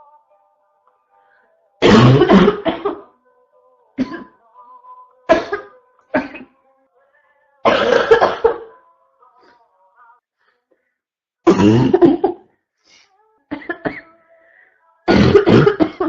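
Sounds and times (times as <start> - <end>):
person coughing harshly: 1.8 - 3.1, 5.3 - 6.5, 7.7 - 8.7, 11.5 - 12.5, 15.1 - 16.0.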